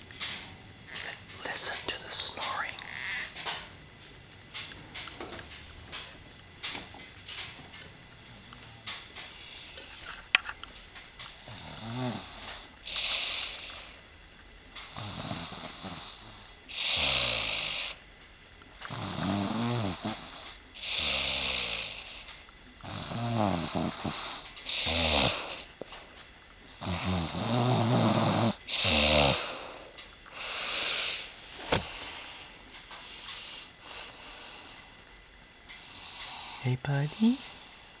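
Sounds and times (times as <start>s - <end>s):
person snoring: 11.5s - 14.0s, 15.0s - 18.0s, 18.9s - 22.2s, 22.8s - 25.7s, 26.8s - 31.3s.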